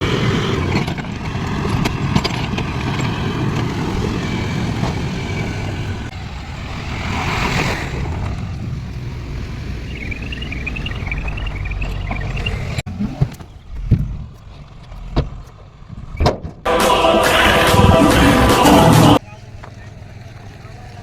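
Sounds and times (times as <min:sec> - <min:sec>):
diesel engine running: 0:00.0 - 0:21.0
high wavering squeal: 0:09.3 - 0:12.8.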